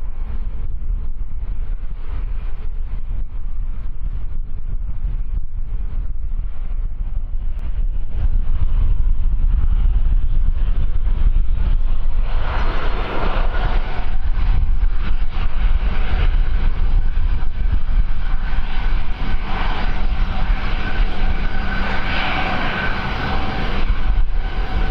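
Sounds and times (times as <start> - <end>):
wind buffeting microphone: 0.0 - 24.9
aircraft engines whining: 7.0 - 24.9.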